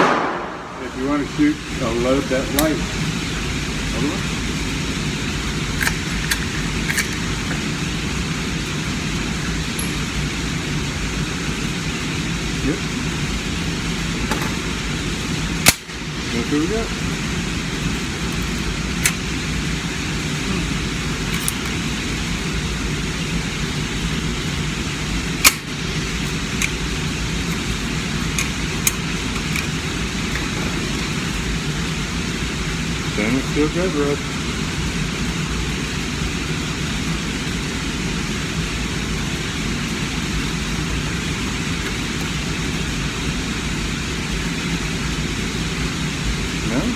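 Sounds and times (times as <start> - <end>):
sharp crack: 0.0 - 1.0, 15.6 - 16.0
low rumbling outdoor noise: 0.0 - 46.9.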